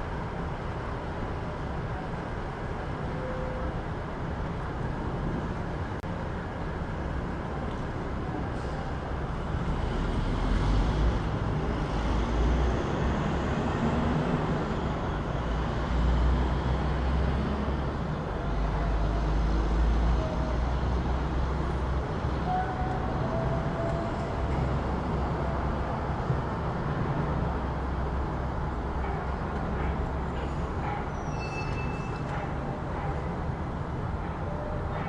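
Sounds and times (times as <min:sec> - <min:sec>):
traffic rumble: 0:00.0 - 0:35.0
faint squeal-like tones: 0:30.4 - 0:32.5.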